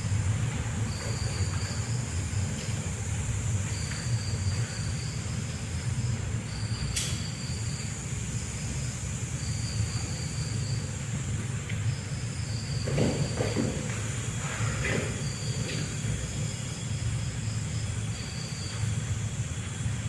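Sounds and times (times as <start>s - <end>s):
higher insect trill: 0.0s - 20.0s
insects trilling: 0.0s - 20.0s
low steady rumble: 0.0s - 20.0s
sharp click: 6.9s - 7.2s.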